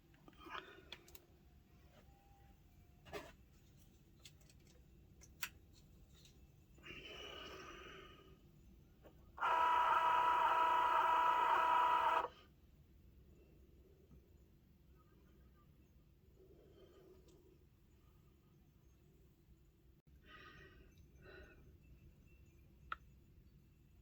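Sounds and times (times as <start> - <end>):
small machine whine: 9.0 - 12.5.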